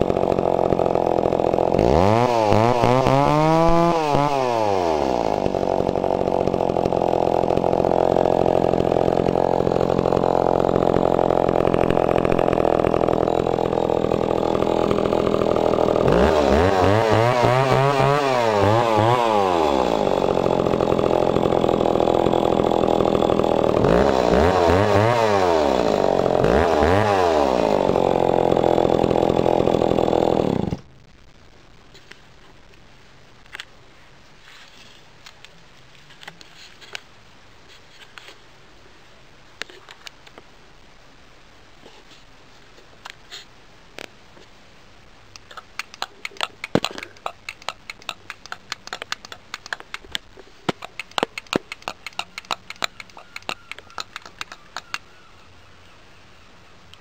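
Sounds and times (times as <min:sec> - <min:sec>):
chainsaw idling and revving: 0:00.0 - 0:30.9, 0:45.8 - 0:55.0.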